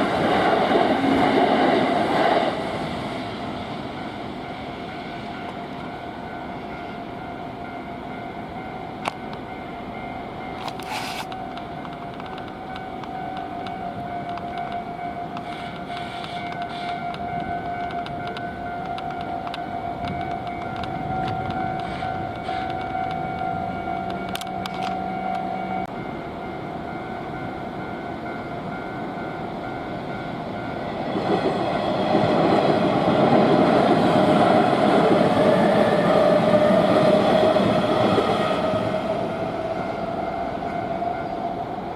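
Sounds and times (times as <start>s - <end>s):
train wheels rumbling on rails: 0.0s - 41.9s
train whine: 0.0s - 41.9s
level crossing warning bell: 3.5s - 41.9s
brief hiss: 10.8s - 11.3s.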